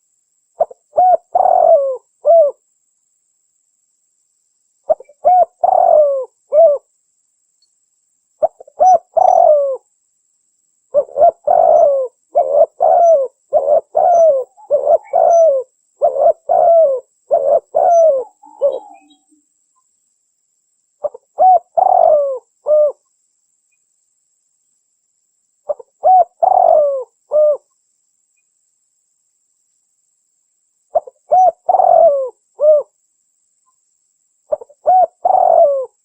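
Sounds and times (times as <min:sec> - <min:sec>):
dove cooing: 0:00.6 - 0:02.6, 0:04.9 - 0:06.9, 0:08.4 - 0:09.8, 0:10.9 - 0:19.3, 0:21.0 - 0:23.0, 0:25.7 - 0:27.7, 0:30.9 - 0:32.9, 0:34.5 - 0:36.0.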